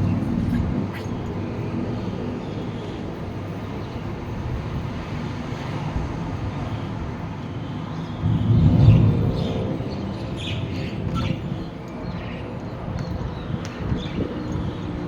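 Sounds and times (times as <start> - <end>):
strong wind gusting: 8.1 - 15.0.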